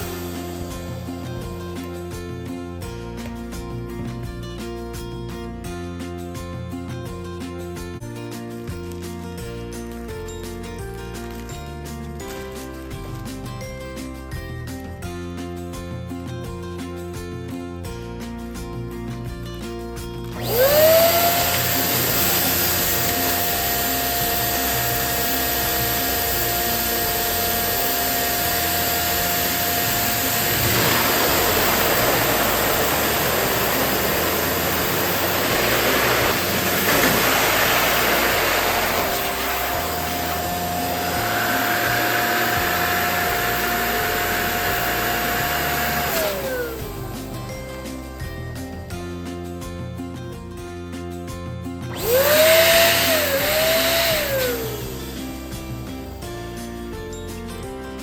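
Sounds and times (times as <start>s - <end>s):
electric balloon pump whining: 0.0s - 2.4s, 20.2s - 47.6s, 51.9s - 56.6s.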